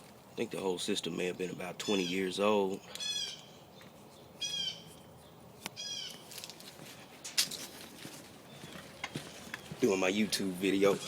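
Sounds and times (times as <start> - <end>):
high-pitched animal calls: 4.4 - 4.9.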